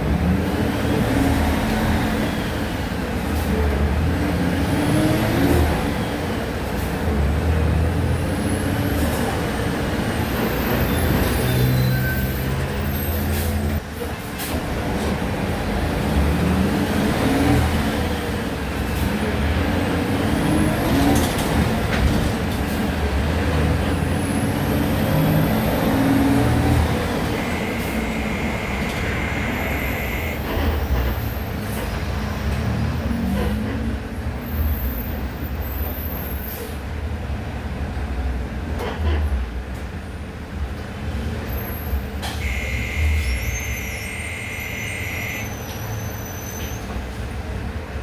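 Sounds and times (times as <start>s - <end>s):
bus engine running: 0.0s - 44.5s
steady high tone: 27.2s - 30.8s.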